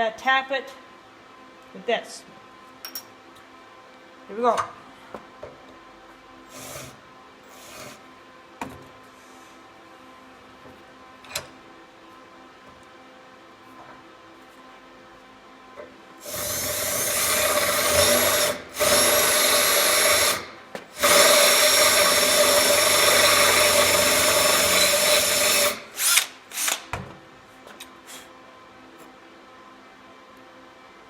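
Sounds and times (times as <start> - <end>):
electric drill whining: 16.2 - 26.9.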